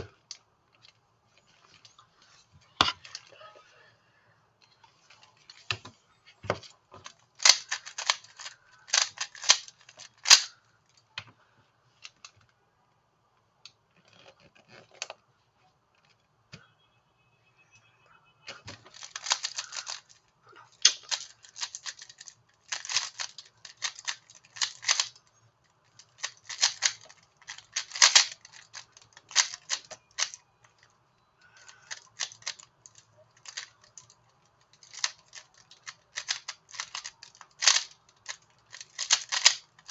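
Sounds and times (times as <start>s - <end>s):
rapid plastic clicking: 18.7s - 20.2s, 20.8s - 25.2s, 26.0s - 30.4s, 31.6s - 39.9s.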